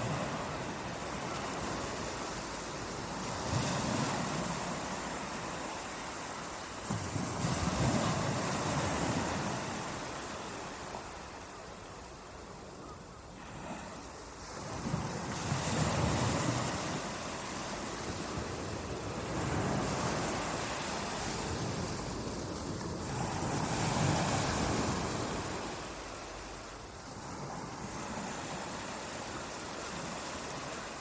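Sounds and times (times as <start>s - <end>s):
ocean waves breaking: 0.0s - 11.5s, 13.4s - 31.0s.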